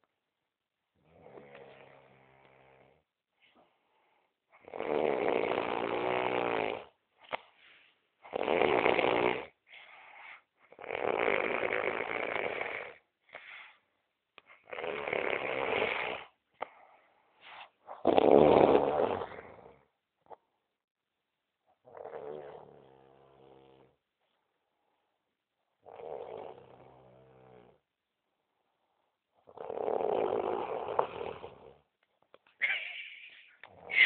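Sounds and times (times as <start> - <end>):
quiet breaths: 0.9 - 4.8, 5.7 - 8.4, 9.4 - 18.0, 21.6 - 34.0
person snoring loudly: 4.6 - 6.9, 8.3 - 9.6, 10.7 - 13.0, 14.6 - 16.3, 18.0 - 19.8, 21.9 - 23.9, 25.8 - 27.8, 29.5 - 31.8.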